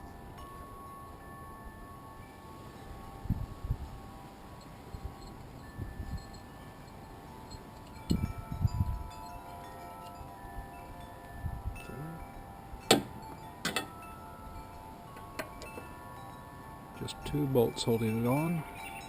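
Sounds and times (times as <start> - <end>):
wind chimes ringing: 0.0 - 19.0
low thuds and clicks of tools: 12.9 - 13.9.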